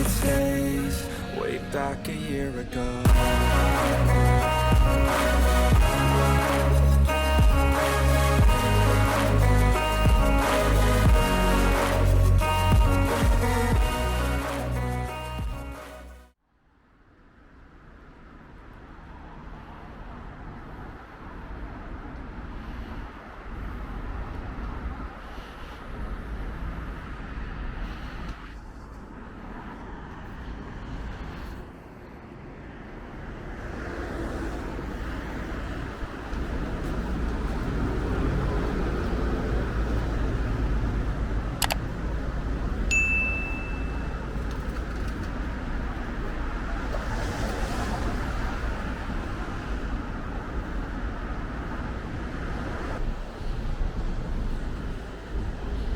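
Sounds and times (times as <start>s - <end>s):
city ambience with low rumble: 0.0s - 55.9s
sharp click: 41.6s - 41.8s
high ding: 42.9s - 44.2s.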